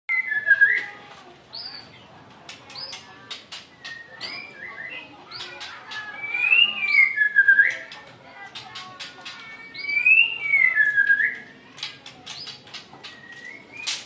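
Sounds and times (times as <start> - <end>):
bird whistling song: 0.1 - 0.8, 3.7 - 7.9, 9.5 - 11.5, 12.4 - 14.0
sharp bird clicks: 11.2 - 14.0.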